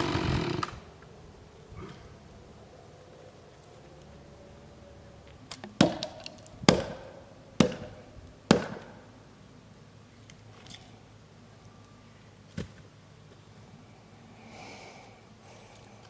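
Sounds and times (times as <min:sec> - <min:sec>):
heavy strikes on a tree: 0:00.0 - 0:00.8, 0:05.8 - 0:09.0.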